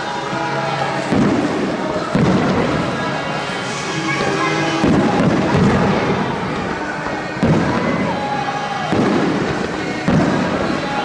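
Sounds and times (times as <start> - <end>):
firework shells booming: 1.1 - 3.0, 4.8 - 8.2, 8.8 - 11.0.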